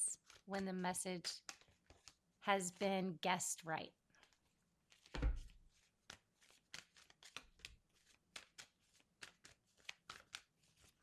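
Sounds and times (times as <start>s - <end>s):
cards being shuffled: 0.2s - 0.6s, 1.3s - 2.2s, 4.2s - 11.0s.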